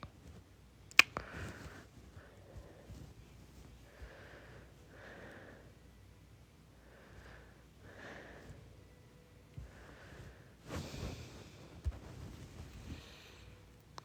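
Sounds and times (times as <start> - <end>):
person breathing faintly: 1.2 - 5.9, 6.7 - 8.9, 9.6 - 13.7.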